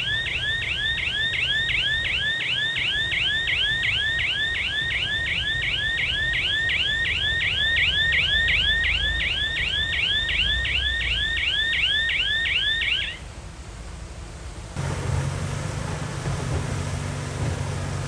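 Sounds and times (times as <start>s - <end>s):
reversing alarm chirping: 0.0s - 13.3s
low engine rumble: 13.2s - 18.0s.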